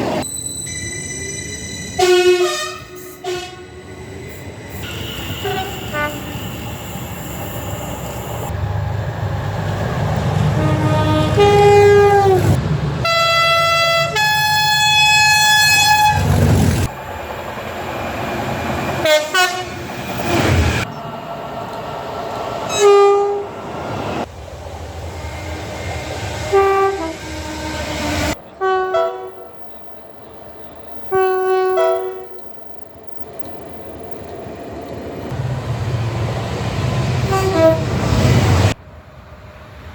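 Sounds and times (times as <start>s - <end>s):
train rumbling past: 0.0s - 39.9s
train horn blasts: 2.0s - 3.7s, 4.8s - 7.1s, 10.5s - 16.3s, 19.0s - 19.8s, 22.7s - 23.5s, 26.5s - 29.4s, 31.1s - 32.3s, 37.2s - 38.0s.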